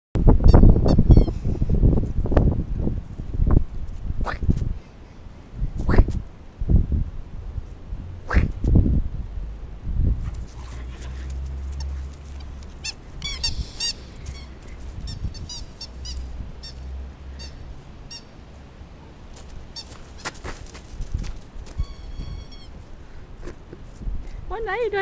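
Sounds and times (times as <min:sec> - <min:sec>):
squeaky dog toy squeaks: 0:00.4 - 0:01.4, 0:11.7 - 0:18.3, 0:19.7 - 0:20.0, 0:21.7 - 0:22.8.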